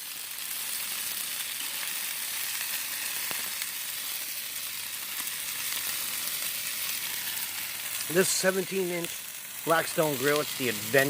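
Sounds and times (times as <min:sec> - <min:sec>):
food sizzling on a griddle: 0:00.0 - 0:11.0
grease popping: 0:00.0 - 0:11.0.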